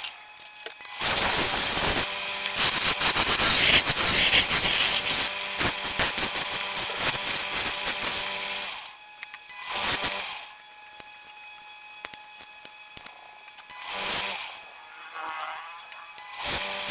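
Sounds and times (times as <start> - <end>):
faint motor hum: 0.0 - 16.9
scratchy rubbing on spinning wood: 2.6 - 8.3.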